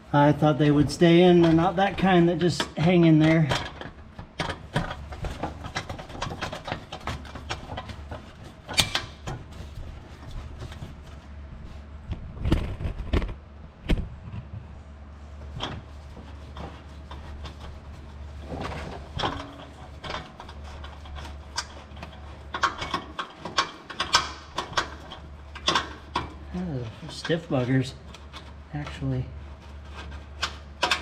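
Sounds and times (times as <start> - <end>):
steady low hum: 0.0 - 31.0
hand tool clicking on screws: 21.1 - 26.3.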